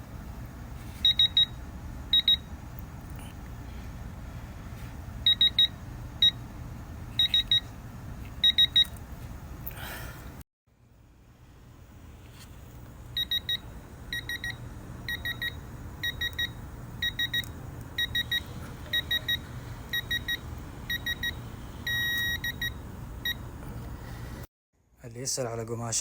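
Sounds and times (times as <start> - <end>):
low steady hum: 0.0 - 24.5
torque wrench beeping: 7.2 - 7.6, 13.2 - 23.4.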